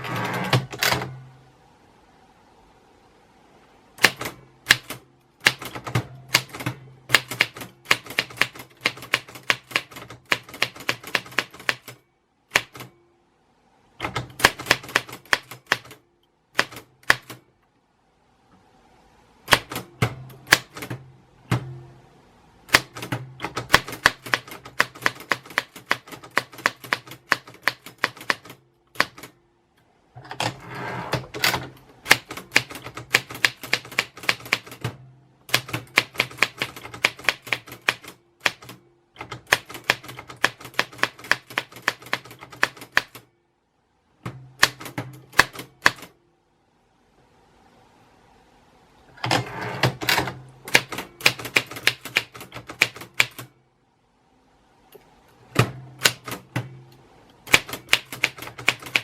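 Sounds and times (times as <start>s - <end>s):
typewriter keys clacking: 31.3s - 34.9s, 49.2s - 53.5s, 57.5s - 59.0s.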